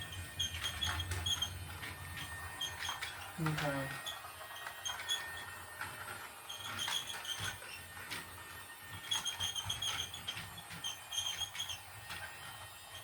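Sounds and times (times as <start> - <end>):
high-pitched chirping squeaks: 0.0 - 5.6, 6.4 - 8.0, 8.9 - 12.1
toy train clicks: 0.0 - 13.0.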